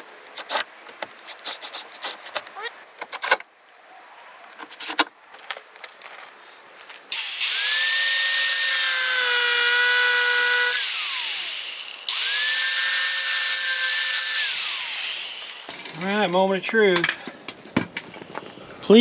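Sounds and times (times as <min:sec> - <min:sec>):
power tool grinding: 0:07.1 - 0:15.7.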